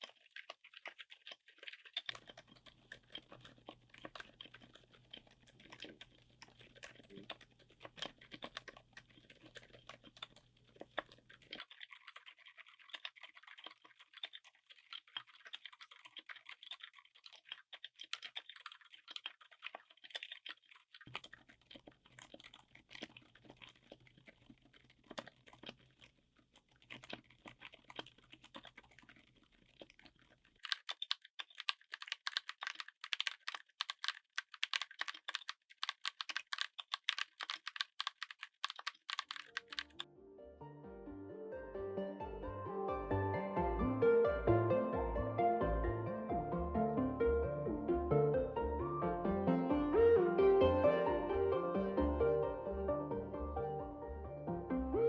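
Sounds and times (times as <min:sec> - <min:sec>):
muted keyboard typing: 0:26.8 - 0:40.1.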